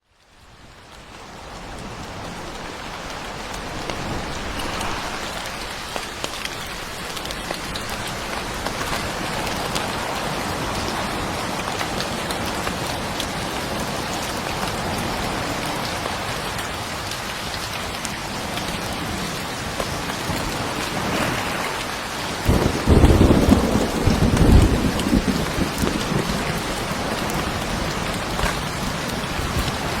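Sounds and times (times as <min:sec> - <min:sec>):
heavy rain falling: 0:00.0 - 0:30.0
low roll of thunder: 0:01.8 - 0:12.5, 0:22.2 - 0:30.0.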